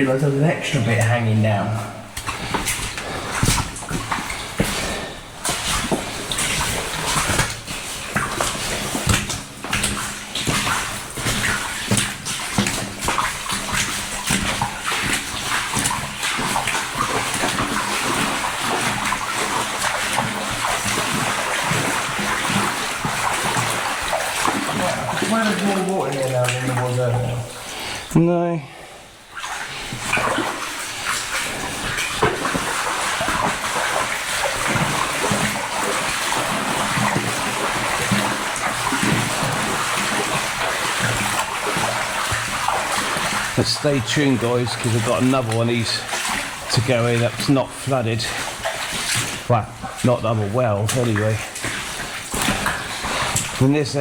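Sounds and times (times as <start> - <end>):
continuous water noise: 0.0 - 54.0
feet splashing through water: 1.8 - 28.1, 29.2 - 54.0.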